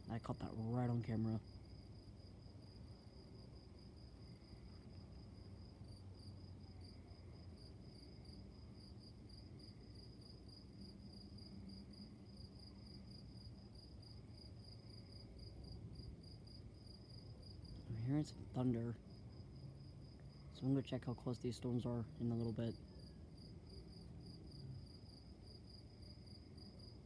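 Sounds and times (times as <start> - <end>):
crickets chirping: 0.0 - 27.0.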